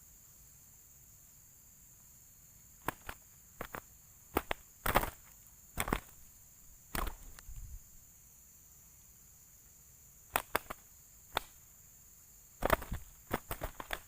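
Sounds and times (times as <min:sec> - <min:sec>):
faint high hiss: 0:00.0 - 0:14.0
sharp knocks and snaps: 0:02.8 - 0:06.2, 0:06.9 - 0:07.5, 0:10.3 - 0:11.6, 0:12.6 - 0:14.0.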